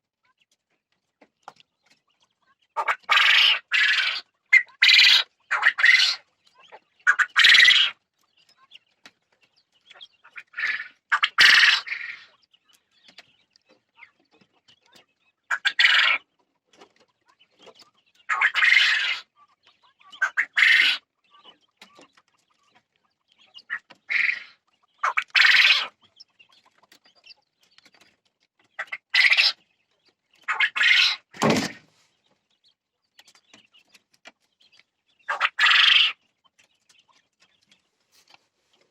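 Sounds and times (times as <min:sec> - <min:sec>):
quail calling: 0:02.4 - 0:08.8, 0:09.8 - 0:16.4, 0:17.0 - 0:27.4, 0:28.6 - 0:32.1, 0:35.1 - 0:36.3.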